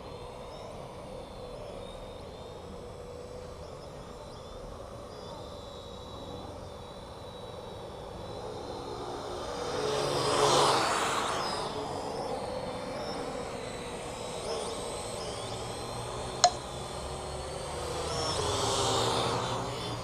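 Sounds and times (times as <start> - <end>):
quadcopter propellers whining: 0.0 - 20.0
sharp click: 16.4 - 16.6.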